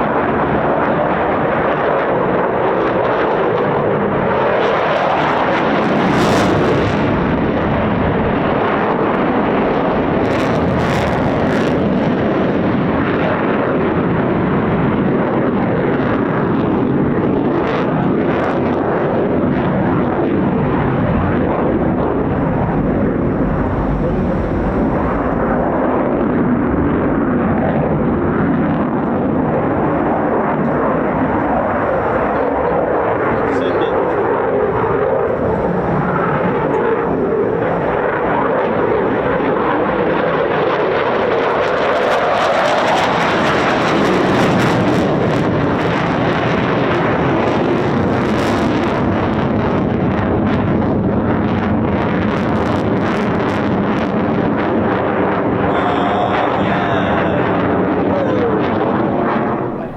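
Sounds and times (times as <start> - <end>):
jet engines roaring: 0.0 - 59.9
jet engine crackles: 15.9 - 40.5, 52.5 - 59.9.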